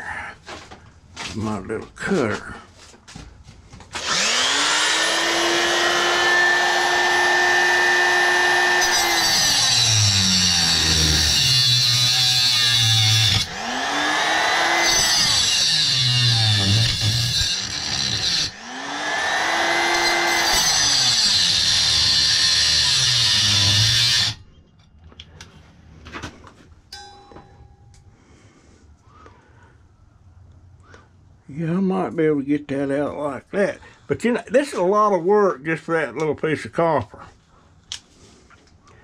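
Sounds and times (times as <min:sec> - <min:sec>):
electric cutter whining: 0:03.9 - 0:24.4
cutter biting into metal: 0:04.0 - 0:24.4.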